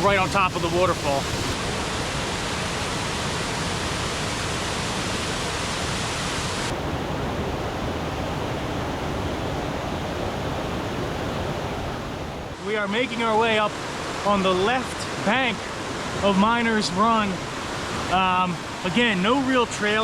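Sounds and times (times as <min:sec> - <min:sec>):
waterfall rushing: 0:00.0 - 0:07.3, 0:12.5 - 0:20.0.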